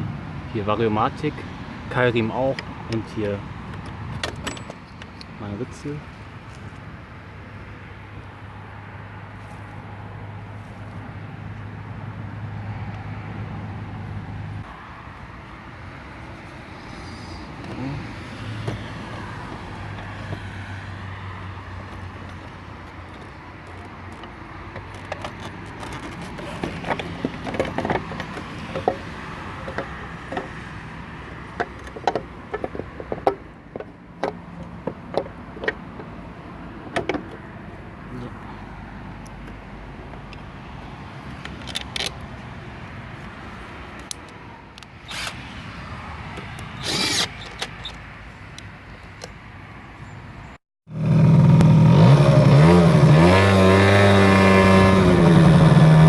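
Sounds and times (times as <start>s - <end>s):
sharp knocks and clicks: 21.9s - 29.0s, 29.6s - 30.6s, 31.5s - 36.2s, 36.8s - 37.4s.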